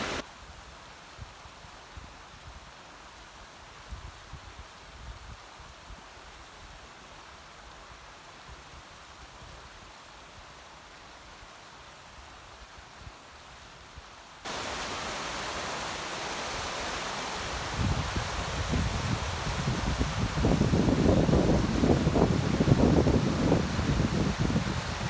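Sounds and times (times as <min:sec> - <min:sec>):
waterfall rushing: 0:00.0 - 0:00.2, 0:14.5 - 0:25.0.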